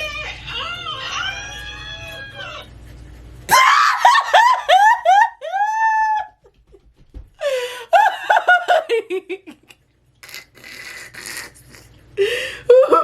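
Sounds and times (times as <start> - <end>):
high-pitched shrieking laughter: 3.5 - 6.4.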